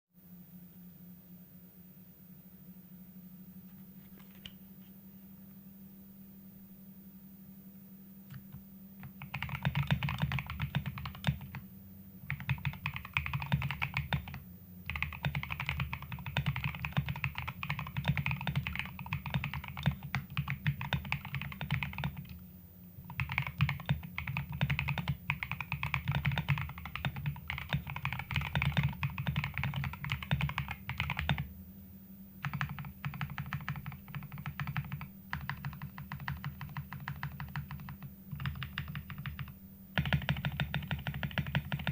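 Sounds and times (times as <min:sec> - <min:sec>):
typing on mechanical keyboard: 0:08.3 - 0:11.6, 0:12.3 - 0:22.4, 0:23.0 - 0:31.5, 0:32.4 - 0:41.9.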